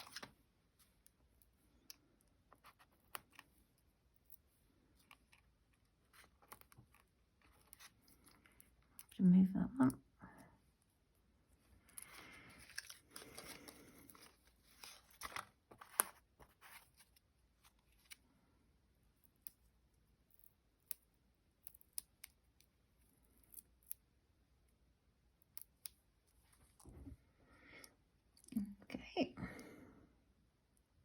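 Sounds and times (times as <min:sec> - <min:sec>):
card pieces rustling: 0:12.0 - 0:17.2.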